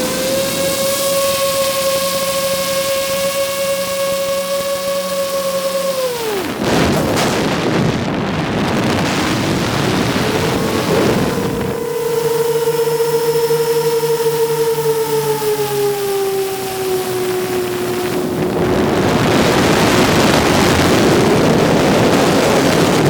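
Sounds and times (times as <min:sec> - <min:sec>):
drone motors whining: 0:00.0 - 0:23.0
rush of air: 0:06.5 - 0:12.0.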